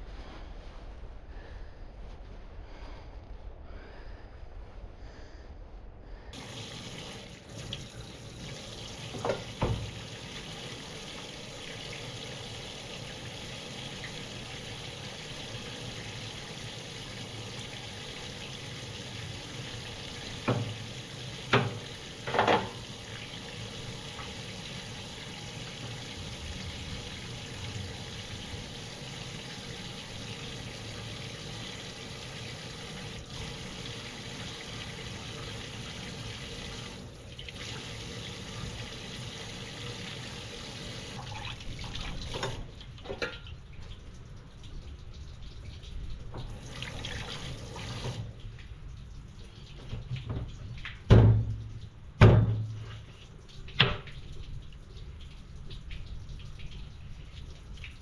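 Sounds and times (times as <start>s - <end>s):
running water rushing: 6.4s - 43.4s.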